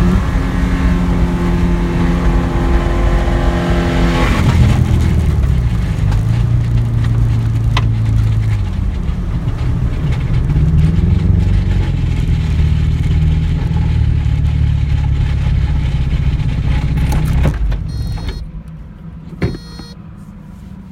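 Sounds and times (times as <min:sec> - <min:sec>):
damaged engine rumbling and rattling: 0:01.6 - 0:20.9
click: 0:17.0 - 0:20.0
faint electronic beeps: 0:17.9 - 0:18.5, 0:19.4 - 0:20.0.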